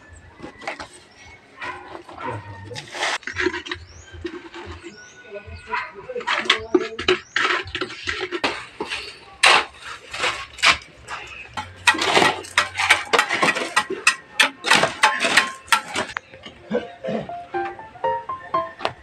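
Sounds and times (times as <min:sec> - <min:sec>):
hard objects clinking together: 0:06.2 - 0:16.6.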